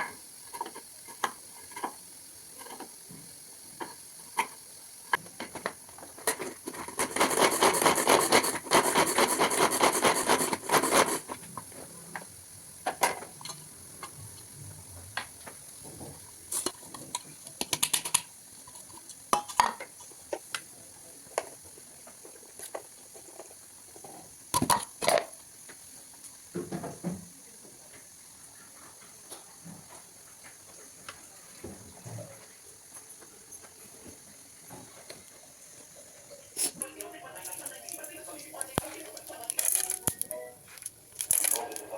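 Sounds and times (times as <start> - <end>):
utensil scraping a cooking pan: 0.0 - 3.1, 5.4 - 11.5
faint steady hiss: 0.0 - 41.9
utensils clinking on cookware: 41.2 - 41.9.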